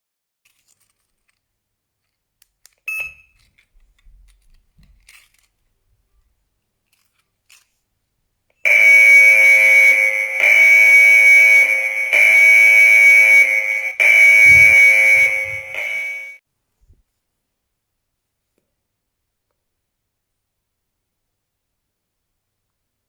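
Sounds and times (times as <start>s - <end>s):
high-pitched alarm siren: 8.7s - 16.4s
short high beep: 8.7s - 16.4s.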